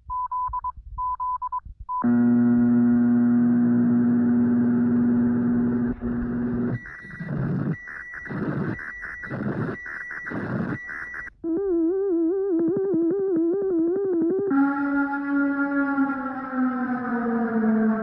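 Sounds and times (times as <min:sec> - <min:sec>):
harsh buzzing data bursts: 0:04.3 - 0:11.3
low warbling alarm tone: 0:14.4 - 0:18.0.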